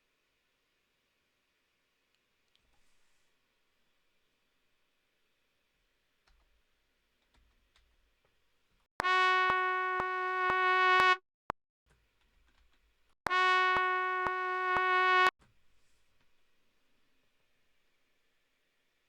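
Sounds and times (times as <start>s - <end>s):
synthesized brass-like tone: 9.0s - 11.2s, 13.2s - 15.3s.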